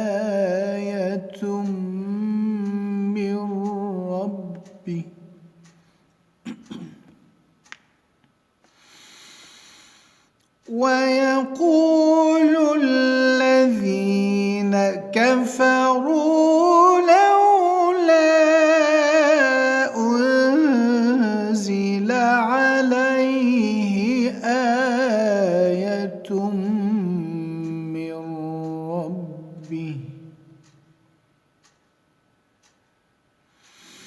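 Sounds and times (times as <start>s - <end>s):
man chanting melodic recitation: 0.0s - 5.3s, 10.7s - 30.5s.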